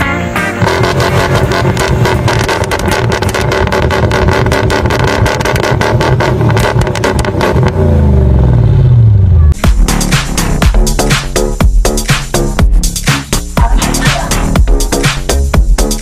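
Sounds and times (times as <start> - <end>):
diesel engine driving hard: 0.0 - 16.0.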